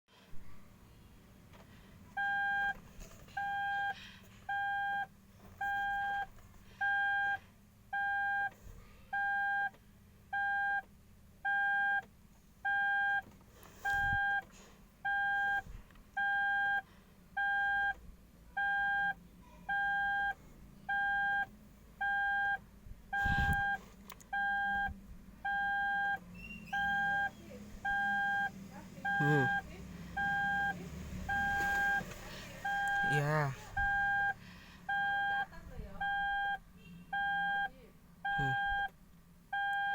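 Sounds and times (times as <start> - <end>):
electronic alarm beeping: 2.2 - 2.8, 3.4 - 3.9, 4.5 - 7.4, 8.0 - 8.5, 9.2 - 9.7, 10.3 - 10.8, 11.5 - 12.0, 12.7 - 13.2, 15.1 - 15.6, 16.2 - 16.8, 17.4 - 18.0, 18.6 - 22.6, 23.2 - 23.8, 24.4 - 24.9, 25.5 - 37.7, 38.3 - 38.9, 39.6 - 39.9.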